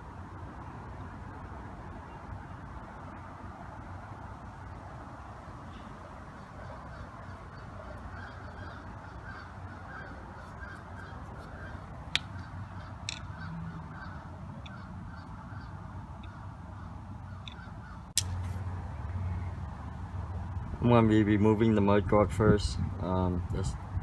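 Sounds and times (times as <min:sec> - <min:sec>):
distant birds calling: 0:02.0 - 0:20.6.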